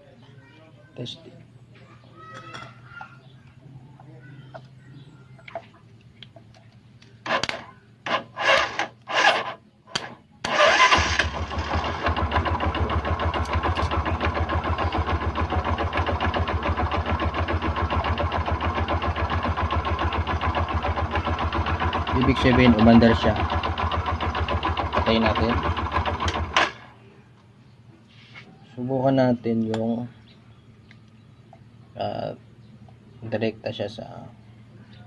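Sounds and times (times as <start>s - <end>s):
motorcycle electric starter cranking: 7.2s - 26.9s
motorcycle engine idling: 10.6s - 27.4s.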